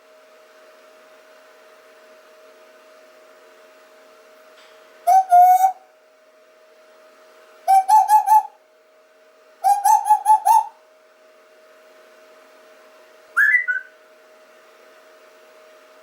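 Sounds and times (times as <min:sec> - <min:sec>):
person whistling: 0:13.4 - 0:13.9.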